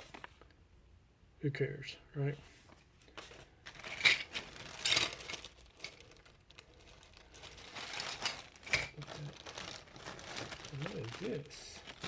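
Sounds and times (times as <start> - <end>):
plastic bag rustling: 3.2 - 12.0.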